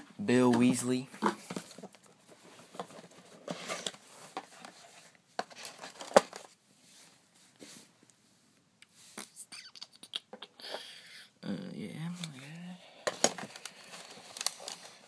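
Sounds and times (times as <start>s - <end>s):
packaging rustling and crinkling: 0.9s - 6.6s, 13.0s - 15.0s.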